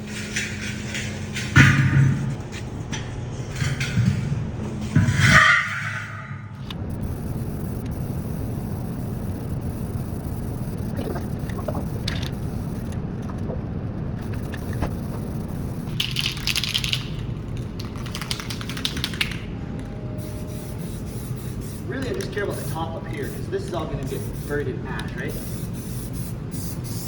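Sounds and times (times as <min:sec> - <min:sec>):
low rumble: 0:06.5 - 0:16.0
welding crackling hiss: 0:06.7 - 0:19.3, 0:20.2 - 0:27.0.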